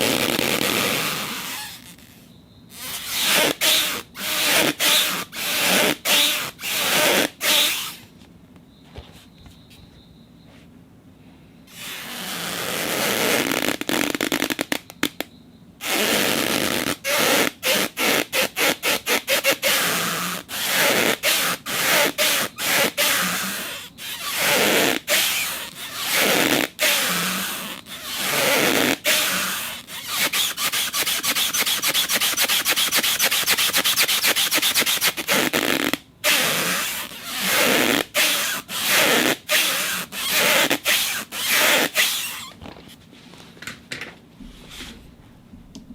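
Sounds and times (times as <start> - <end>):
acrylic rubbing against a surface: 15.9 - 42.5.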